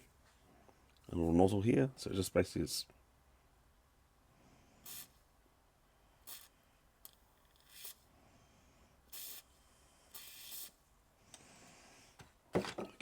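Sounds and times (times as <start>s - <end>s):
aerosol spray hissing: 9.1s - 9.5s, 10.1s - 10.7s.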